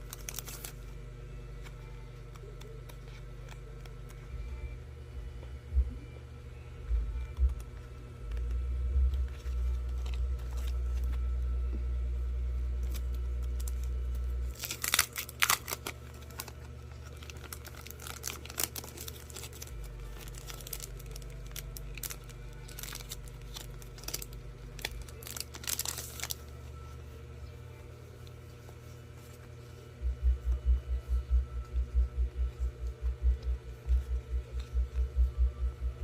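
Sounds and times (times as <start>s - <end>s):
packaging crinkling and tearing: 0.0s - 0.9s, 8.4s - 11.3s, 12.8s - 26.9s.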